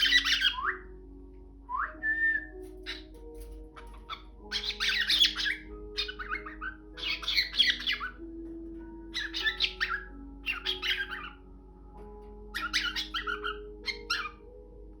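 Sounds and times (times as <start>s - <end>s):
cockatiel squawking: 0.0s - 0.8s, 2.8s - 8.3s, 9.1s - 11.5s, 12.5s - 14.5s
soft mallet melody music: 0.0s - 15.0s.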